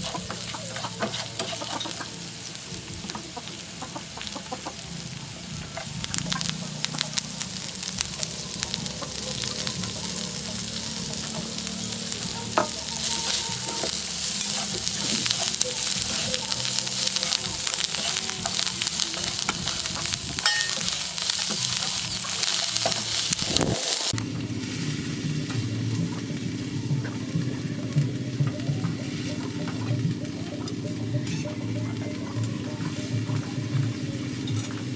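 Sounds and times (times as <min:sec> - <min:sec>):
utensil stirring in pan: 0:00.0 - 0:02.3, 0:05.8 - 0:24.2
food sizzling in hot oil: 0:00.0 - 0:25.2.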